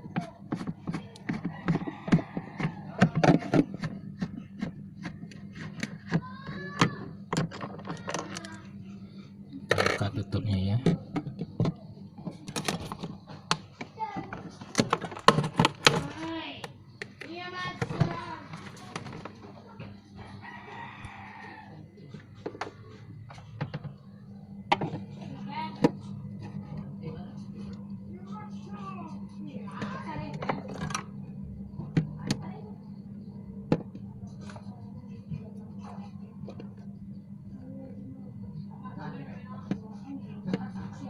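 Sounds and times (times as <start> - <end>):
steady low hum: 0.0 - 41.0
rooster crowing: 1.3 - 3.6, 19.7 - 22.2
clicks and knocks of handled parts: 7.3 - 8.6.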